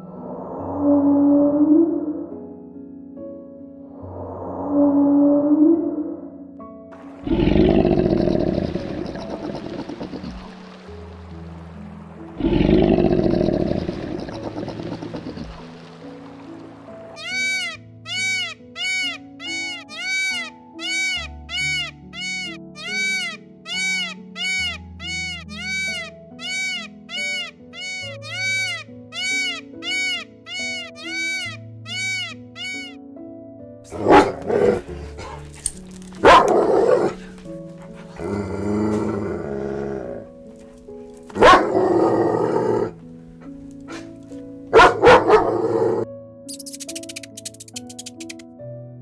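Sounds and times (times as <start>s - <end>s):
background music: 0.0s - 49.0s
animal bleat-like calls: 17.2s - 33.0s
dog barking: 33.9s - 35.6s, 36.2s - 38.1s, 41.4s - 41.8s, 43.9s - 44.1s, 44.7s - 46.0s.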